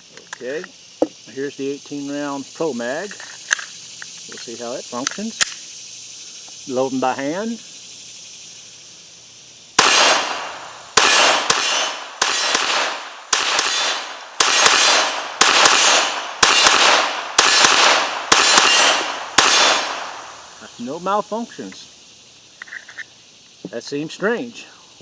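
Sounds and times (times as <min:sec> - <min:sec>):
pistol shots with short echo: 0:09.8 - 0:20.3.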